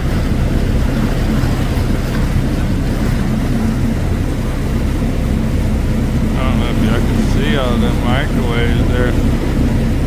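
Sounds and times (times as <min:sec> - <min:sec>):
low drone: 0:02.1 - 0:10.0.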